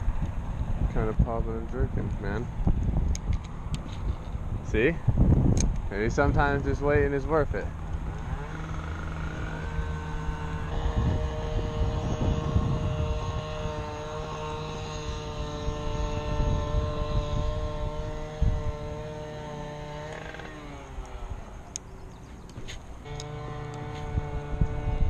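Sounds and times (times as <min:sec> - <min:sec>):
motor-like drone with held tones: 0:00.0 - 0:25.0.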